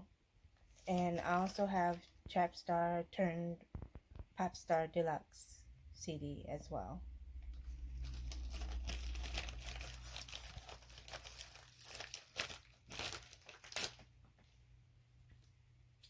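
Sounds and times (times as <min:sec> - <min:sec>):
packaging crinkling and tearing: 0:00.7 - 0:02.1, 0:07.6 - 0:14.5.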